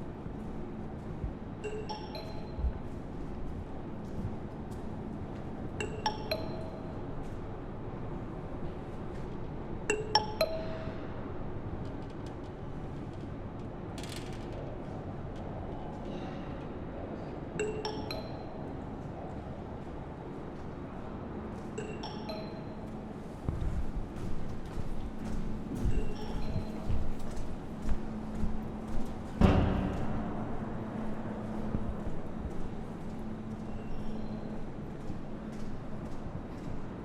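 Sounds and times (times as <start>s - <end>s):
train rumbling: 23.4s - 37.0s.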